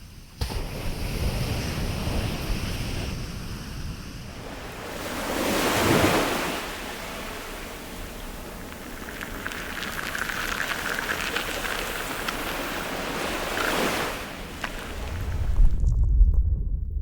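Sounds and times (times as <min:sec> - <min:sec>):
waves washing on shore: 0:00.4 - 0:15.8
deep low rumble: 0:14.9 - 0:17.0.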